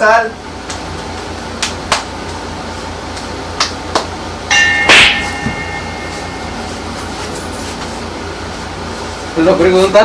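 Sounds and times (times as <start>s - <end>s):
metal kitchenware clattering: 4.5s - 7.8s
metal piece ringing: 4.5s - 8.4s.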